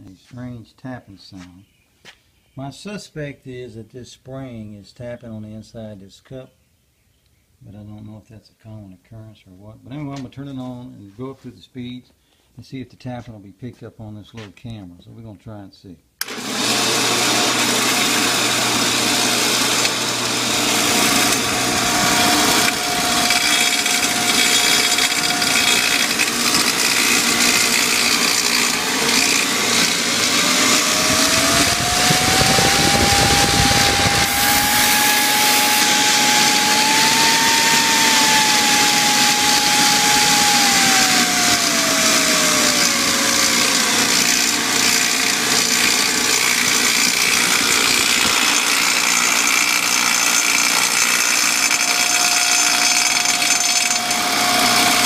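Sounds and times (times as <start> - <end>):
woodworking machine motor whine: 16.2 - 55.0.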